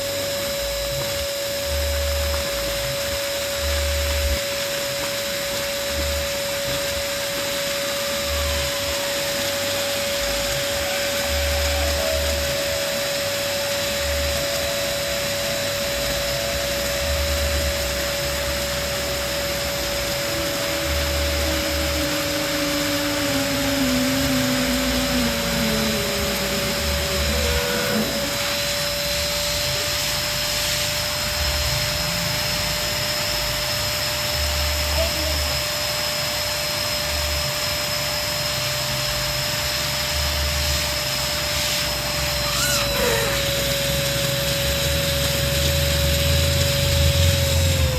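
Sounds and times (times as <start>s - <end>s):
electric balloon pump whining: 0.0s - 47.9s.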